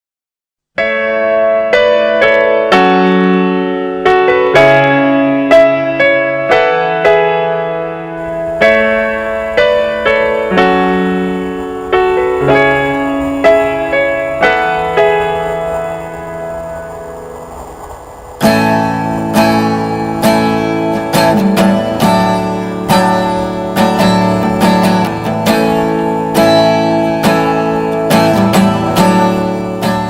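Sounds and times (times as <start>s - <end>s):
slow gentle piano piece: 0.8s - 30.0s.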